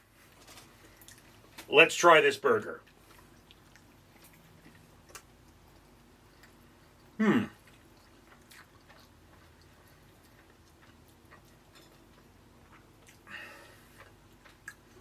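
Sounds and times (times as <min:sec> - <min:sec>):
man chewing: 0:00.1 - 0:01.6, 0:02.8 - 0:15.0.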